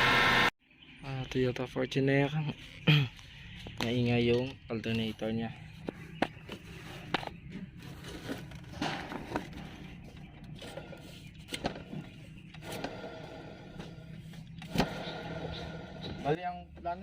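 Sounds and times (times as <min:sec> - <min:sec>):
alternator humming: 0:00.0 - 0:00.5, 0:05.4 - 0:17.0.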